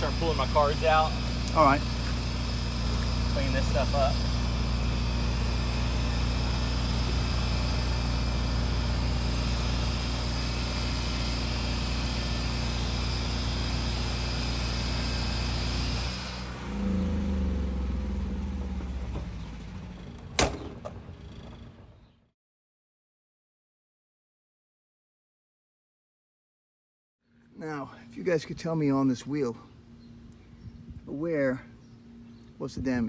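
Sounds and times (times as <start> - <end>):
engine humming: 0.0 - 22.2
sharp knock: 20.4 - 20.9.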